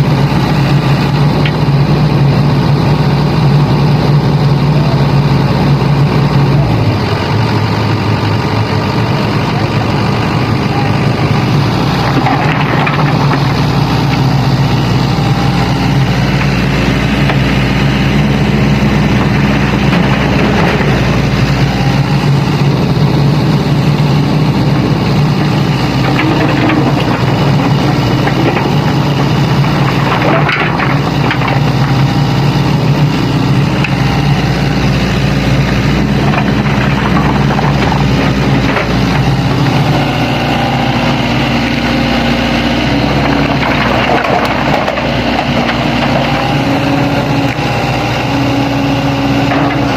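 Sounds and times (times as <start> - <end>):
diesel engines running: 0.0 - 49.9
rock clattering: 12.0 - 13.8, 25.9 - 32.0.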